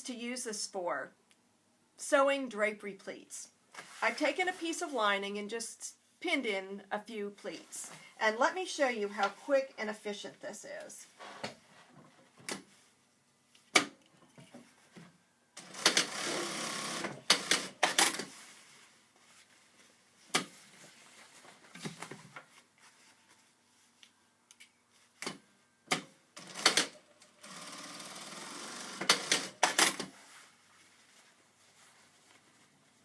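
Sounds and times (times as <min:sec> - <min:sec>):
sewing machine stitching: 0:15.6 - 0:18.3, 0:26.4 - 0:30.1.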